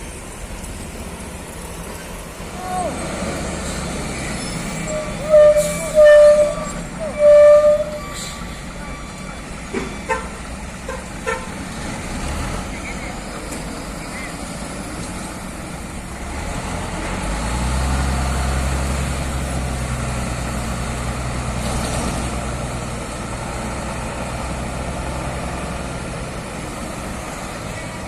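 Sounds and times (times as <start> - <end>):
road traffic: 0.0 - 28.0
diesel truck engine running: 8.1 - 28.0.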